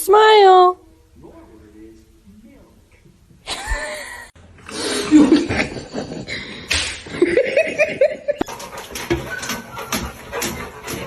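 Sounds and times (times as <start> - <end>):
person laughing: 3.5 - 8.4.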